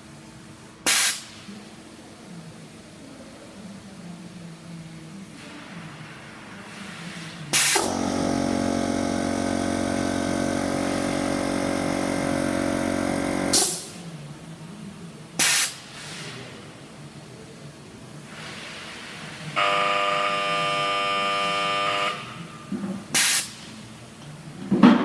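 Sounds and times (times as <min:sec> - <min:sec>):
air hiss: 0:00.8 - 0:01.6, 0:05.4 - 0:08.1, 0:12.6 - 0:14.0, 0:15.4 - 0:16.6, 0:23.1 - 0:23.8
welding machine electrical hum: 0:07.6 - 0:14.0, 0:19.6 - 0:22.3.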